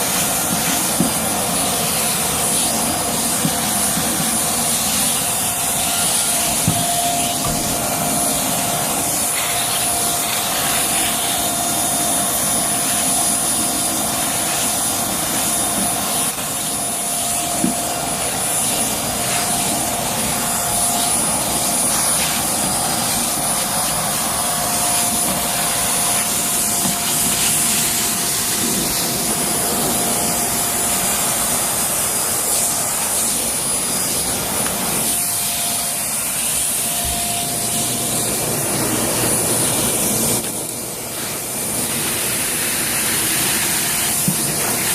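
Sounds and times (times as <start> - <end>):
vacuum cleaner running: 0.0 - 44.9.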